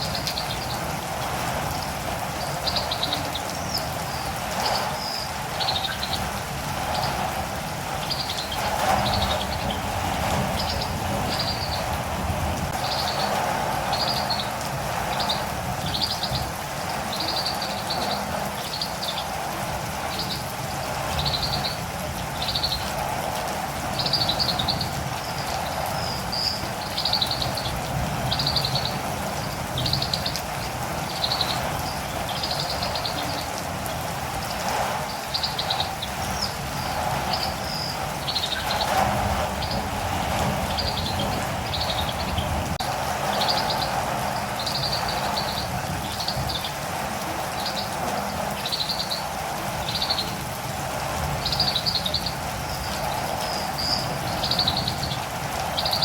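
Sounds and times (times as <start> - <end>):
steady rain: 0.0 - 56.0
bird chirping: 1.8 - 7.3, 8.0 - 12.0, 12.8 - 19.3, 22.4 - 22.9, 24.0 - 33.4, 35.1 - 39.9, 40.7 - 46.8, 47.5 - 50.4, 51.4 - 55.2.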